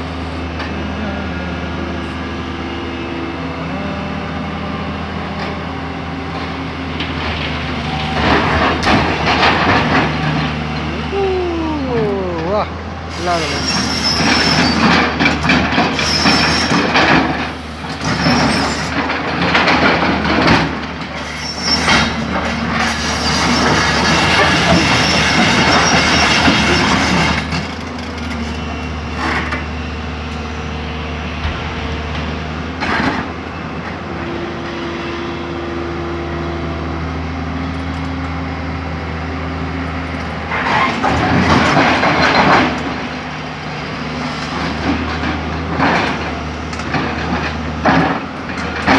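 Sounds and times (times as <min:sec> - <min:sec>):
excavator engine running: 0:00.0 - 0:48.9
grinding and squealing: 0:01.7 - 0:29.6, 0:40.1 - 0:48.9.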